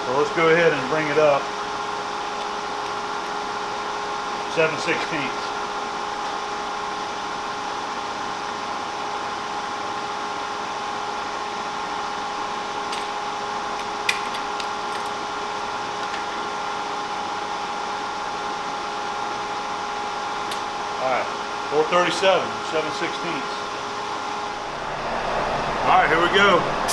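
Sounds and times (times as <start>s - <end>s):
milling machine humming: 0.0s - 26.9s
coolant air hiss: 24.9s - 26.9s.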